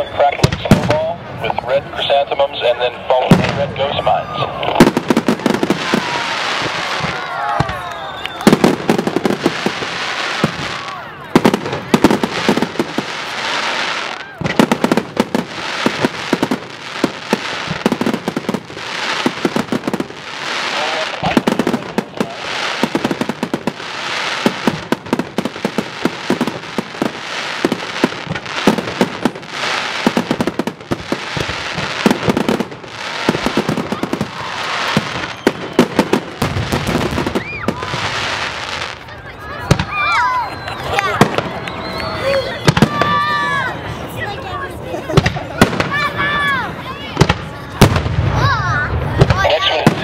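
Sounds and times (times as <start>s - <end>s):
rapid firework crackling: 4.6s - 40.0s, 47.0s - 50.0s
firework hissing shots: 8.5s - 39.0s.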